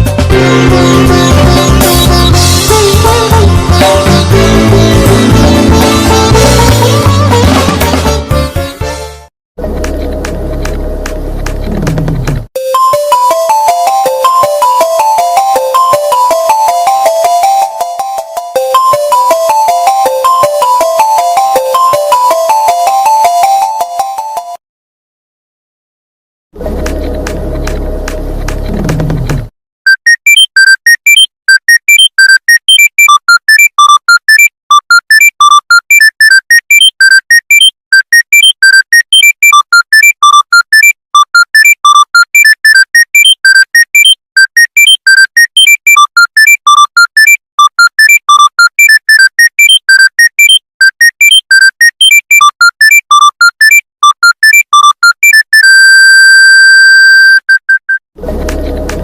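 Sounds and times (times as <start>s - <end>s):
smartphone ringtone beeps: 12.6s - 24.6s, 29.9s - 58.0s.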